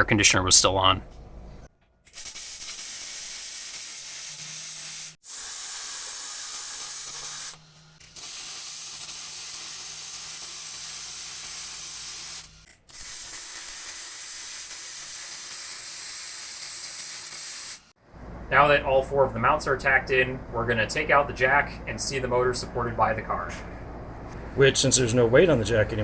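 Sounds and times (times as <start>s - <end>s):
welder frying hiss: 2.1s - 17.9s.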